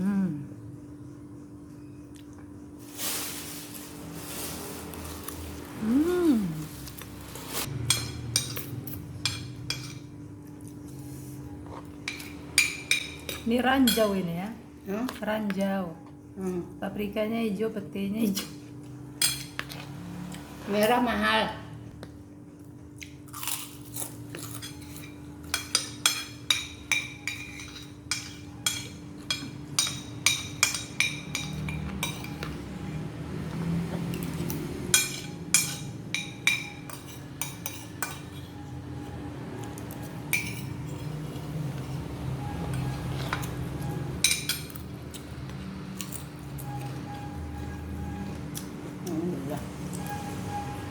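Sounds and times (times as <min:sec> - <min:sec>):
cutlery clinking on a plate: 0:24.4 - 0:32.5, 0:34.9 - 0:38.6, 0:40.3 - 0:41.2.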